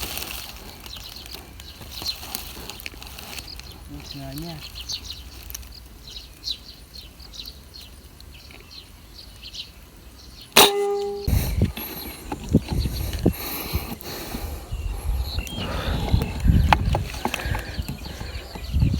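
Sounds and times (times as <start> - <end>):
small birds chirping: 0.0 - 18.9
short ringing tone: 10.7 - 11.4.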